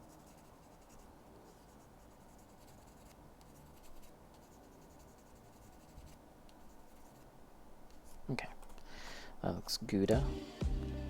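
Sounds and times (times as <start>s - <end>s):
faint quick scratching strokes: 0.0s - 7.3s.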